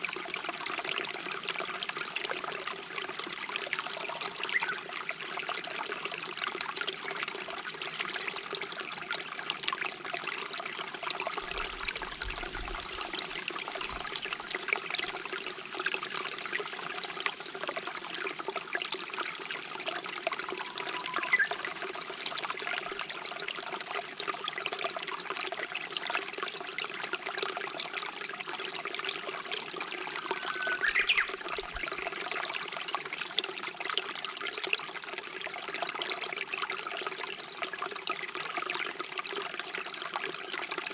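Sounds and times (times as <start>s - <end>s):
stream water babbling: 0.0s - 40.9s
faint short rising bird call: 20.5s - 21.7s, 30.2s - 31.4s.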